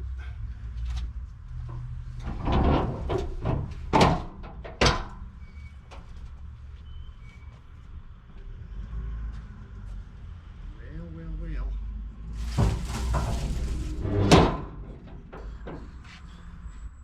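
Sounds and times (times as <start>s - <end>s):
rattling and scraping: 1.6s - 6.2s, 12.4s - 17.0s.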